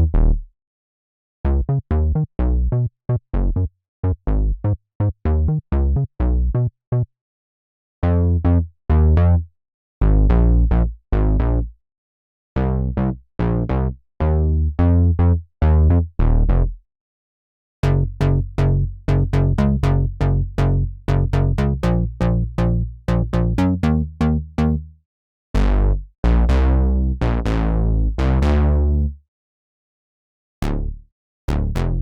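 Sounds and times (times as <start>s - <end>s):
synthesizer bass notes: 1.5s - 4.7s, 10.0s - 11.7s, 12.6s - 16.8s, 17.8s - 25.0s, 25.6s - 29.2s, 30.6s - 32.0s.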